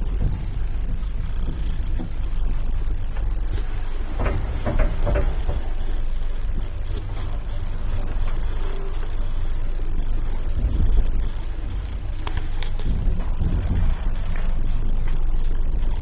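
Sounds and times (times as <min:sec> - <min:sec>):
elevator running on wooden rails: 0:00.0 - 0:16.0
clicks and knocks: 0:03.1 - 0:06.0.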